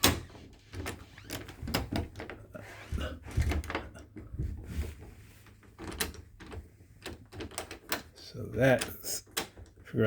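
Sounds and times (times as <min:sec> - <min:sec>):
metal latch clicks and rattles: 0:05.8 - 0:09.8.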